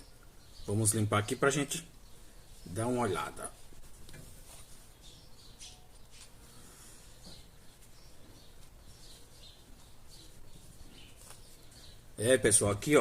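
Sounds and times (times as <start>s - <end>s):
scratchy squeaks of wiping: 8.6s - 11.7s.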